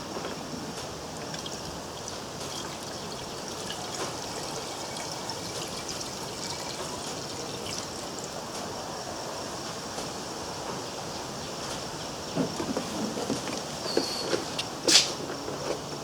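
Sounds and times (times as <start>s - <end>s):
water trickling into engine hopper: 0.8s - 9.2s.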